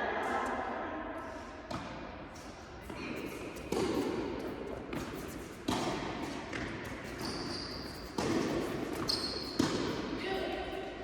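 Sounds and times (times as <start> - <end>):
tennis ball struck by rackets: 3.6 - 4.3, 8.2 - 10.2.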